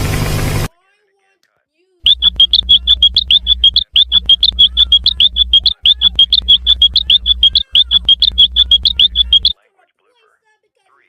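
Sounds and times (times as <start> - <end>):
rapid high cartoon chirps: 2.1 - 9.6.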